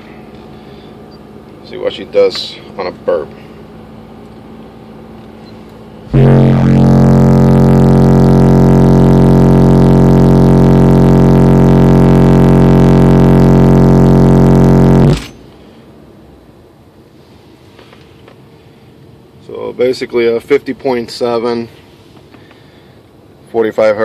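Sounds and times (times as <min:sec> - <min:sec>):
subwoofer bass tone: 0:00.0 - 0:15.5.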